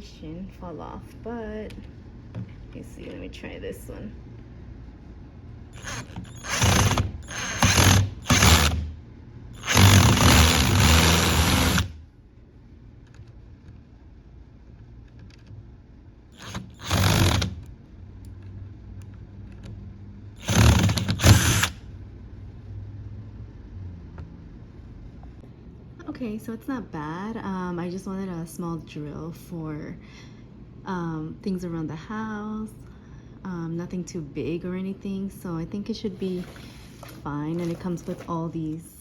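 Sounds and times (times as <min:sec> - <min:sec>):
cordless drill driving screw: 0:05.8 - 0:08.9, 0:09.6 - 0:12.0, 0:16.4 - 0:17.6, 0:20.4 - 0:21.8.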